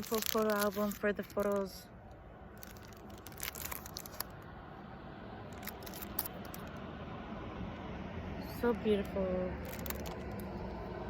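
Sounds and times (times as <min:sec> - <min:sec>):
packaging crinkling and rustling: 0:00.0 - 0:01.8, 0:02.6 - 0:04.4, 0:05.5 - 0:06.7, 0:09.6 - 0:10.5.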